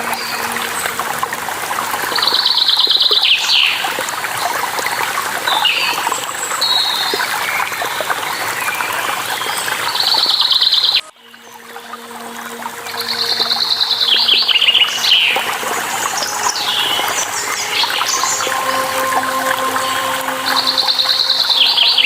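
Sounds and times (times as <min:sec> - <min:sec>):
waterfall rushing: 0:00.0 - 0:05.6, 0:11.2 - 0:22.0.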